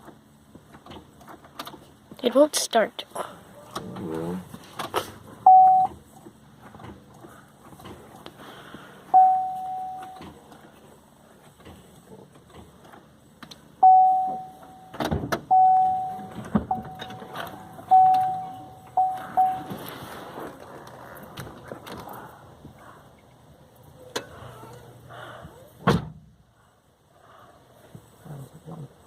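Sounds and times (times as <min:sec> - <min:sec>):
car warning chime beeps: 0:05.4 - 0:06.0, 0:09.1 - 0:10.3, 0:13.8 - 0:19.8.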